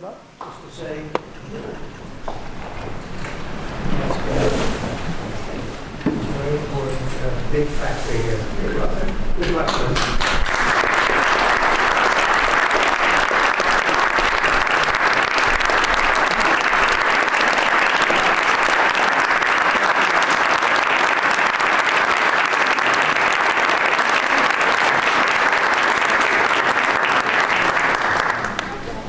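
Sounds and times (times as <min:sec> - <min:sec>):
audience applause: 0:09.4 - 0:29.0.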